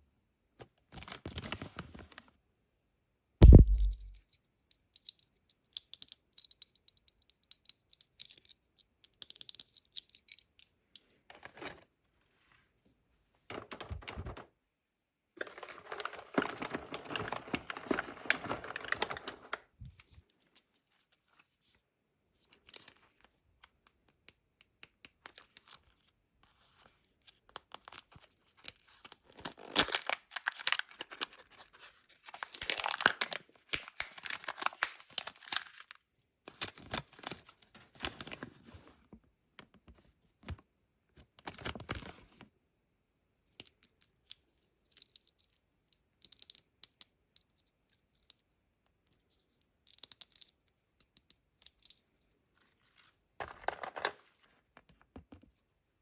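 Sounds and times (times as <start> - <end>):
foil wrapper tearing and crinkling: 15.4 - 19.5, 29.4 - 31.4, 32.3 - 35.9.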